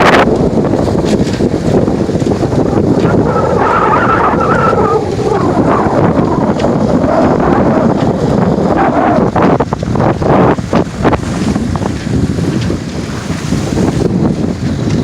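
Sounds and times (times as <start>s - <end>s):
outboard motor: 0.0s - 15.0s
waves: 0.0s - 15.0s
wind buffeting microphone: 0.0s - 15.0s.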